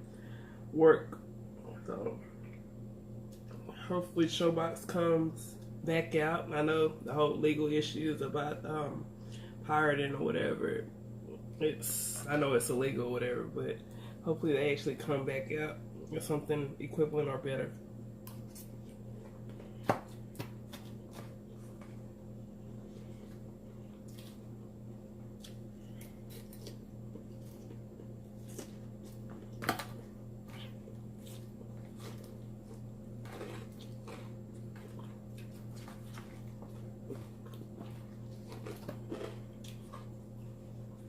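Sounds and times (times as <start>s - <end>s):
steady low hum: 0.0s - 41.0s
chewing crunchy salad: 18.2s - 41.0s.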